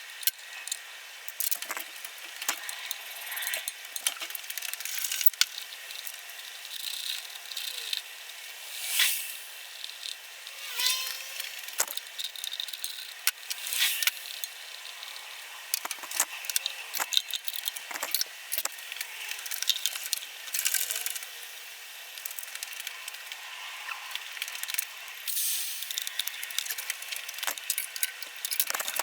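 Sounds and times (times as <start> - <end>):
metal tools clinking and knocking: 1.3 - 2.7, 15.8 - 18.7, 25.9 - 29.0.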